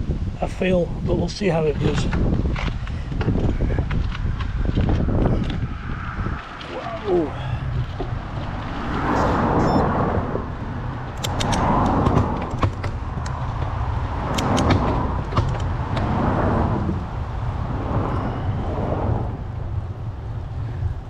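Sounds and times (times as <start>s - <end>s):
wind rumble on microphone: 0.0s - 21.0s
cyclist breathing hard: 2.8s - 6.4s, 7.3s - 8.4s, 17.4s - 19.6s
sharp clicks: 11.1s - 16.1s.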